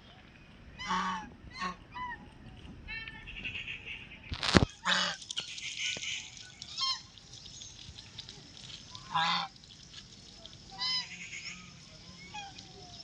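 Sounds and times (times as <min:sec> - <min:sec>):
duck quacking: 0:03.6 - 0:05.2, 0:09.1 - 0:09.5.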